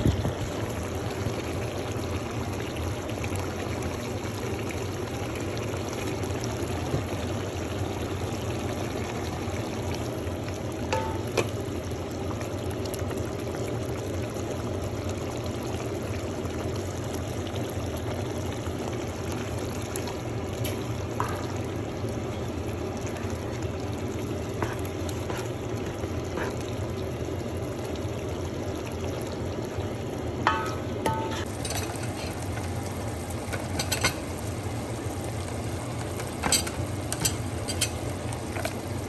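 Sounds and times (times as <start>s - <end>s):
soup bubbling in a pot: 0.0s - 39.0s.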